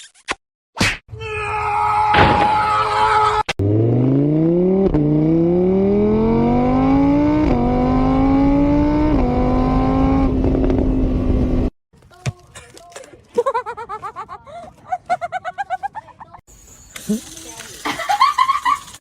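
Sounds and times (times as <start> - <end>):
vehicle engine accelerating: 3.6 - 11.7.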